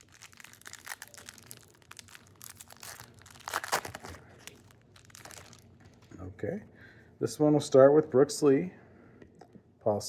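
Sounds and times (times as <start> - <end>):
card pack wrapper tearing and crinkling: 0.0 - 5.7.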